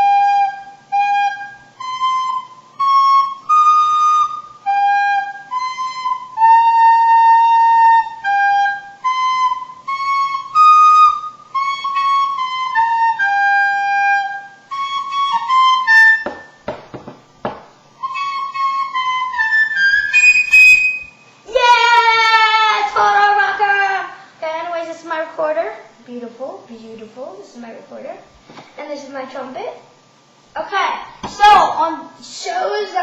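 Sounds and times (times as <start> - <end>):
recorder playing a simple tune: 0.0 - 16.6, 18.0 - 21.2
sharp knocks: 16.2 - 17.8.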